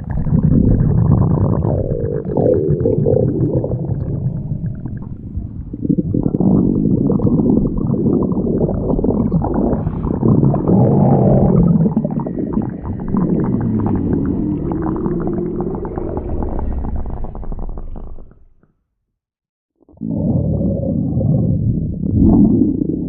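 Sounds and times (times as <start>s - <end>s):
stomach growling: 0.0s - 18.7s, 19.8s - 23.0s.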